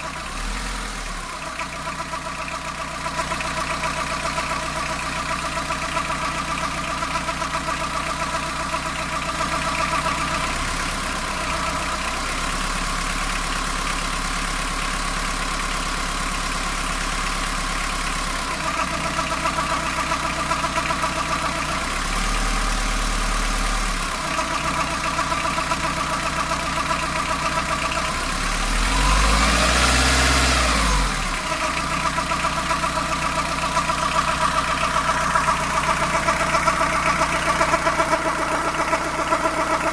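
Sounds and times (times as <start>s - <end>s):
engine revving: 0.0s - 1.4s, 21.8s - 39.9s
van engine idling: 0.0s - 39.9s
engine belt noise: 18.4s - 39.9s.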